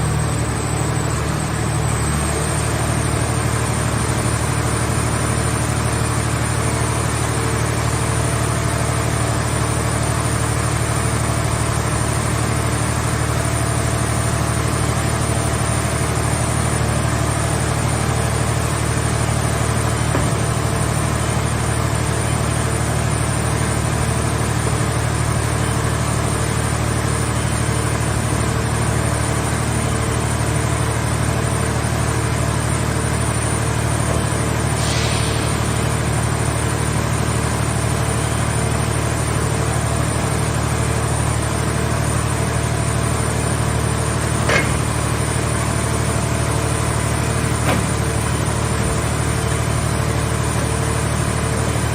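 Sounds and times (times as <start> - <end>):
brief hiss: 34.8 - 35.6
power unit humming: 40.7 - 51.9.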